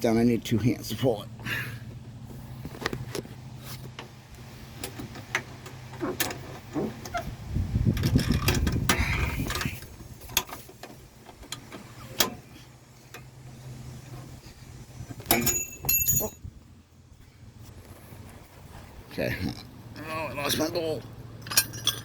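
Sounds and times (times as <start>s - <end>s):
scraping and rustling: 2.2s - 7.4s
steel bolt bouncing: 15.3s - 16.2s.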